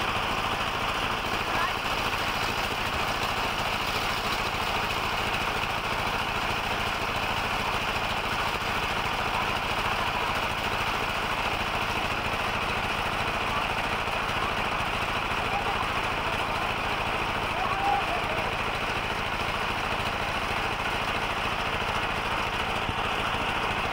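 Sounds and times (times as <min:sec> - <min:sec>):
small engine running steadily: 0:00.0 - 0:23.9.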